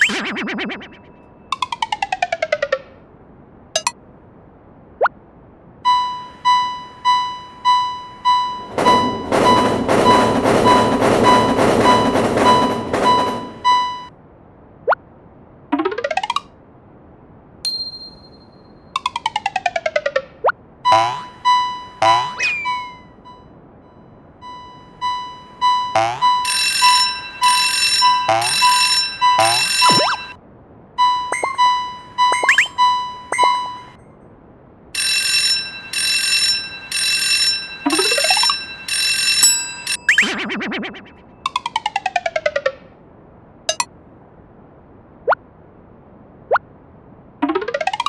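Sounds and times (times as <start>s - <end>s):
railroad crossing bell ringing: 6.8s - 14.1s, 17.7s - 18.6s, 26.1s - 30.4s, 31.3s - 34.0s, 35.0s - 40.5s
rising glide sound effect: 22.0s - 23.0s, 31.3s - 33.9s.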